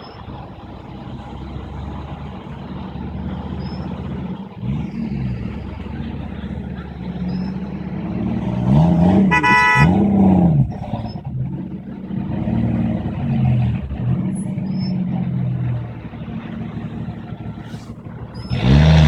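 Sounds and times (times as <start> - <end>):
engine revving: 0.0 - 19.0
traffic engines running: 0.0 - 19.0
car horn blast: 9.3 - 10.1.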